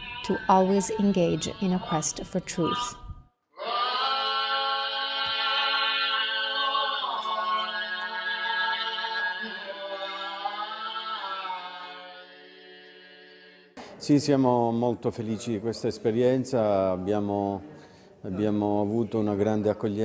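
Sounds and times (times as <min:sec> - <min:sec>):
men singing in close harmony: 0:03.6 - 0:13.8.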